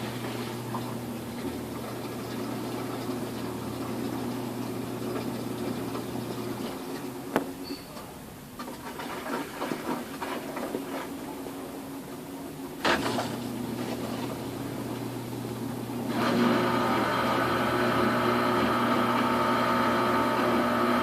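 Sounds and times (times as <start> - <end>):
washing machine motor hum: 0.0 - 21.0.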